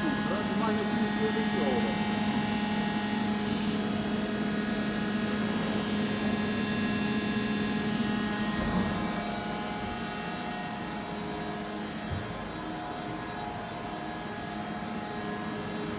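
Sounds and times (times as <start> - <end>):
lathe humming: 0.0 - 8.5.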